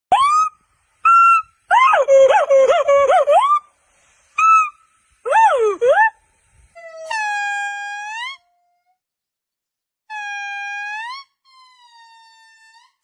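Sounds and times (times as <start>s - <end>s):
monkey calls: 0.1s - 3.7s.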